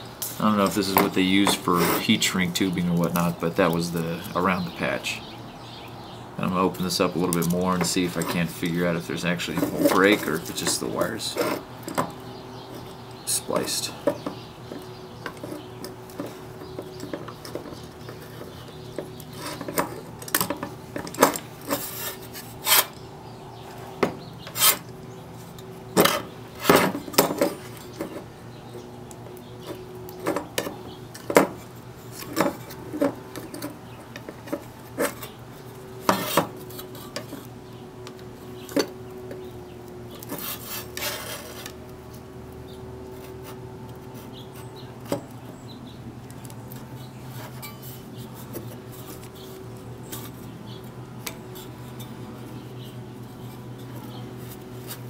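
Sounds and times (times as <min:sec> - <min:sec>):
steady low hum: 0:00.0 - 0:55.0
short scraping: 0:00.3 - 0:02.2, 0:21.0 - 0:23.0, 0:24.4 - 0:24.9, 0:40.2 - 0:41.7
hand tools clicking on metal: 0:06.8 - 0:23.1.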